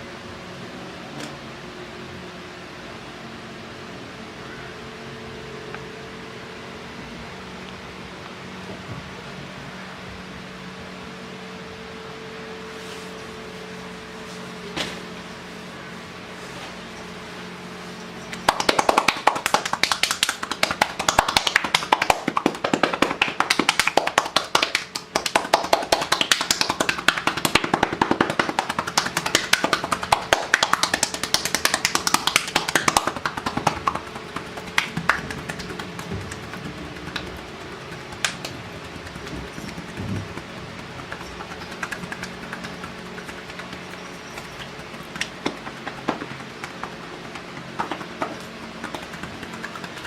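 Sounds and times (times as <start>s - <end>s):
hands slapping and tapping body: 18.3s - 50.0s.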